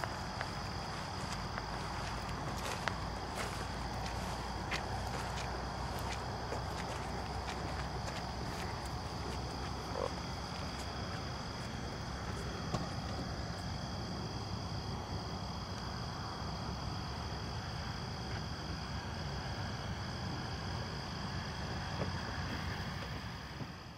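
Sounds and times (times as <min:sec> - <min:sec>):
low rumbling noise: 0:00.0 - 0:15.1
insects trilling: 0:00.0 - 0:23.9.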